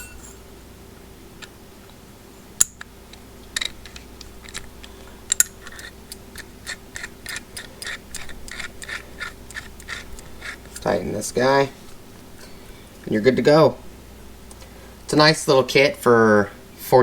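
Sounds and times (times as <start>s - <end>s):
sharp metal clicks: 2.6s - 10.9s
threads scraping ticks: 3.1s - 12.0s.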